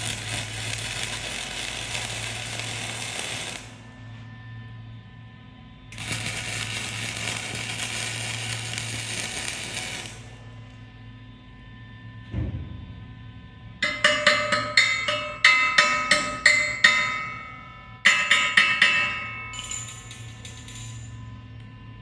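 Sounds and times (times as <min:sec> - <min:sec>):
dull thump: 0:12.3 - 0:13.2
hammer striking steel: 0:13.8 - 0:21.3.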